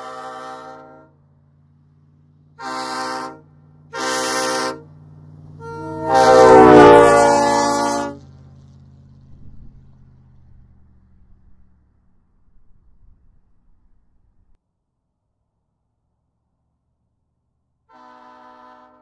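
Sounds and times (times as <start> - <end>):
train air horn: 0.0 - 1.2, 2.6 - 8.4, 17.9 - 19.0.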